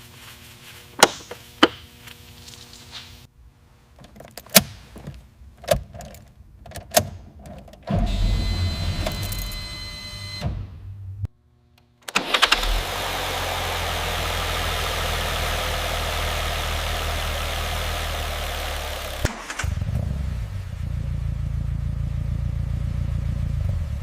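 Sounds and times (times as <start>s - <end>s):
electric motor whirring: 12.1s - 19.6s.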